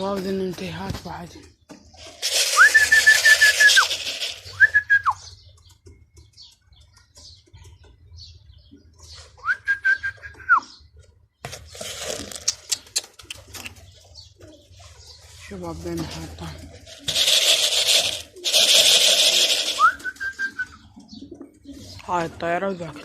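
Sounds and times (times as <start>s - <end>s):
pigeon wings rustling: 1.9s - 5.0s, 14.9s - 20.7s
person whistling: 2.6s - 3.9s.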